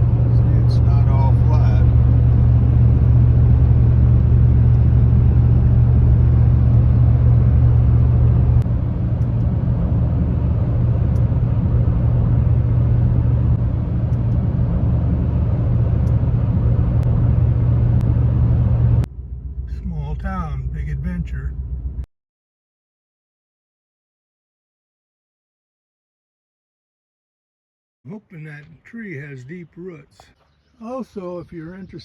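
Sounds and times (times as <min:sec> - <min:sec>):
car engine and road noise: 0:00.0 - 0:22.1.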